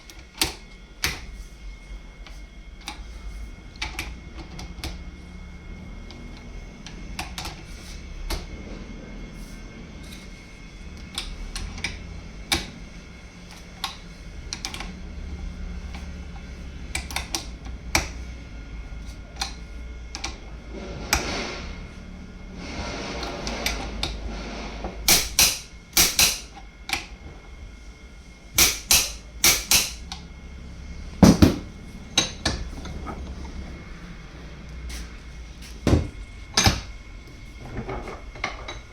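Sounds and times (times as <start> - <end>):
sharp metallic hits: 25.1 - 26.5, 28.6 - 30.0.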